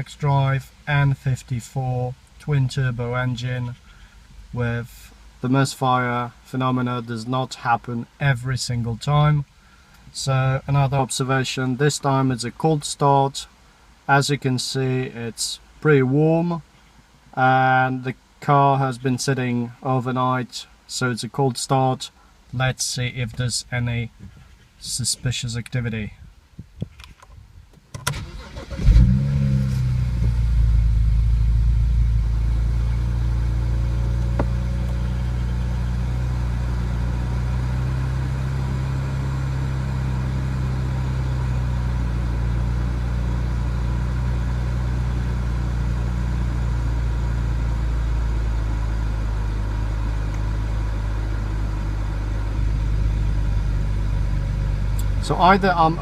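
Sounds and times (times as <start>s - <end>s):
car engine starting and idling: 27.9s - 56.0s.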